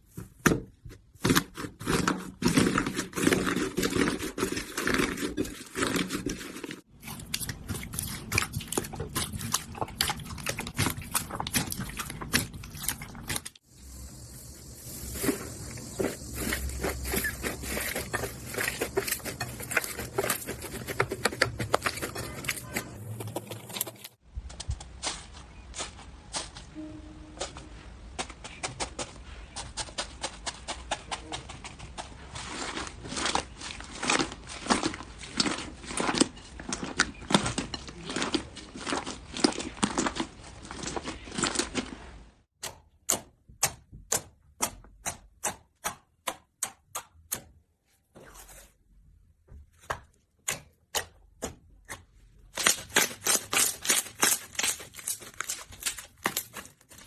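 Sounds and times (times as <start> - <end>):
slime crackling and popping: 52.5 - 57.0.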